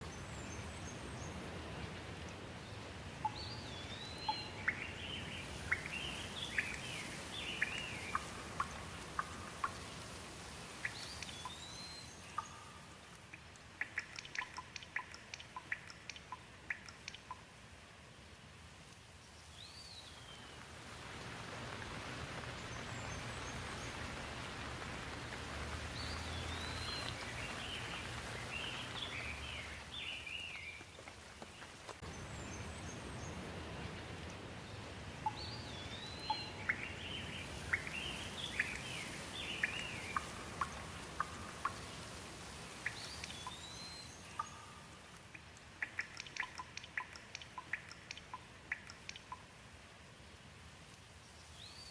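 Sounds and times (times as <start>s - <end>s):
birds chirping: 0.0s - 17.4s, 25.7s - 42.0s, 42.7s - 49.4s
steady rain hiss: 0.0s - 51.9s
sharp dripping ticks: 1.3s - 2.5s, 3.1s - 17.8s, 25.2s - 34.4s, 35.1s - 49.7s.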